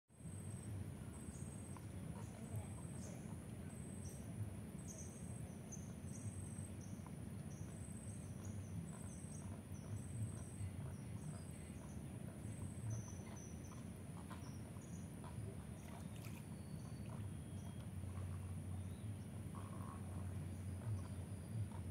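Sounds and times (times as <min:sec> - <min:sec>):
low rumble: 0:14.4 - 0:21.9.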